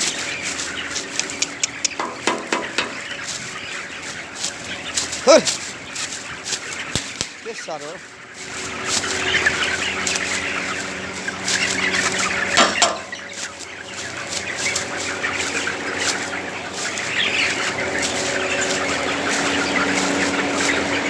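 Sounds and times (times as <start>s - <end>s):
chickens clucking and cheeping: 0.0s - 21.0s
scattered knocks: 1.9s - 3.1s, 12.6s - 13.2s
steady hum: 8.0s - 21.0s.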